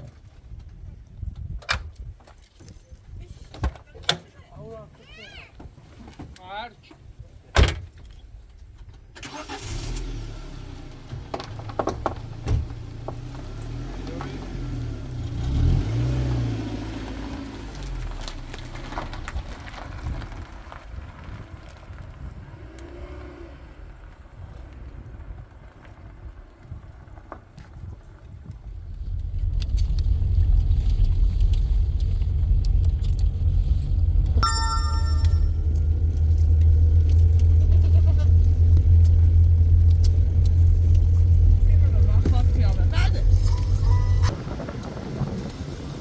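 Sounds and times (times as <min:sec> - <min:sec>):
vehicle engine starting and running: 0:09.2 - 0:20.5, 0:28.8 - 0:46.0.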